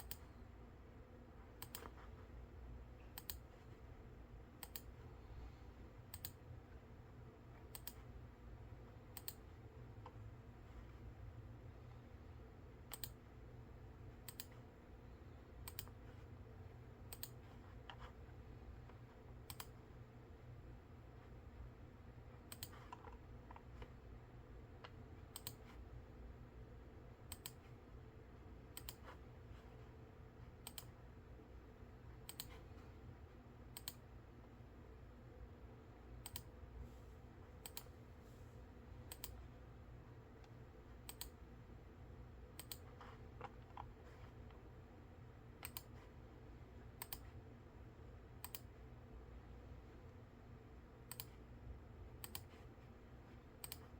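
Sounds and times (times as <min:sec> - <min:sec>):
computer control clicks: 0:00.0 - 0:00.2, 0:01.6 - 0:02.0, 0:03.1 - 0:03.4, 0:04.6 - 0:04.9, 0:06.1 - 0:06.4, 0:07.7 - 0:08.0, 0:09.1 - 0:09.4, 0:12.9 - 0:13.2, 0:14.2 - 0:14.6, 0:15.6 - 0:16.0, 0:17.1 - 0:18.1, 0:19.5 - 0:19.8, 0:22.5 - 0:23.2, 0:24.8 - 0:25.7, 0:27.3 - 0:27.6, 0:28.7 - 0:29.2, 0:30.6 - 0:30.9, 0:32.2 - 0:32.6, 0:33.7 - 0:34.0, 0:36.2 - 0:36.5, 0:37.6 - 0:37.9, 0:39.1 - 0:39.4, 0:40.4 - 0:41.4, 0:42.6 - 0:43.9, 0:45.6 - 0:45.9, 0:47.0 - 0:47.3, 0:48.4 - 0:48.7, 0:51.1 - 0:51.4, 0:52.2 - 0:52.5, 0:53.6 - 0:53.9
faint steady hum: 0:00.0 - 0:53.9.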